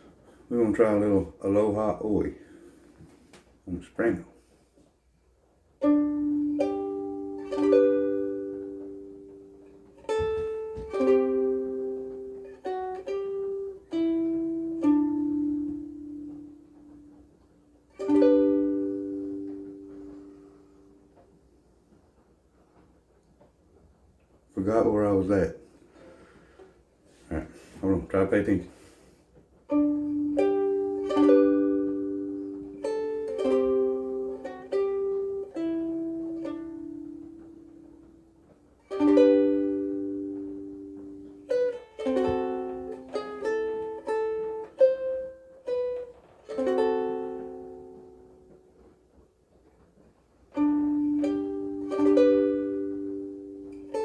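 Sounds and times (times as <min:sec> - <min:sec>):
ukulele chords ringing: 0:05.8 - 0:21.4, 0:29.7 - 0:49.8, 0:50.4 - 0:54.0.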